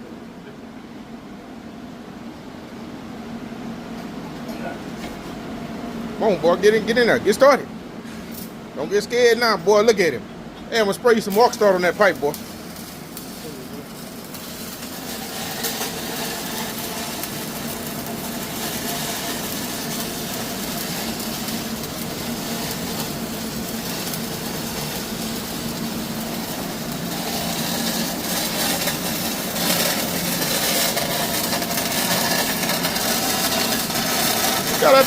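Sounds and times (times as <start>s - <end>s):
machine hum: 0.0s - 35.0s
welding arc crackling: 8.3s - 35.0s.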